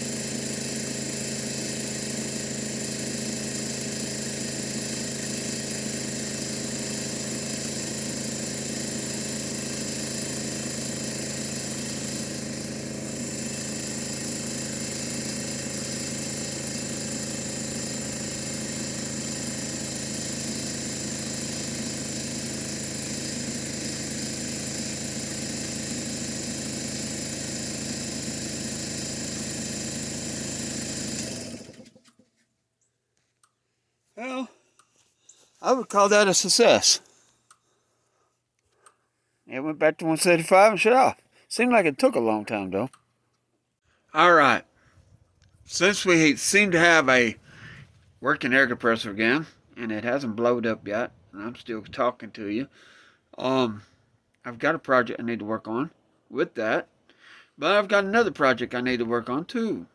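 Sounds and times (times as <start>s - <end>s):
air compressor running: 0.0s - 32.3s, 34.2s - 43.0s, 43.8s - 54.2s, 57.0s - 59.9s.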